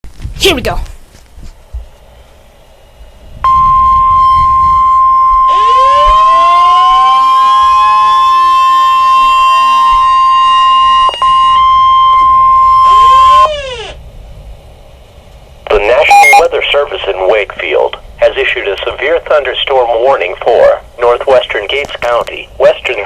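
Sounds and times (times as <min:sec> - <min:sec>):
steady alarm tone: 0:03.4 - 0:13.9
siren with sliding pitches: 0:03.4 - 0:14.0.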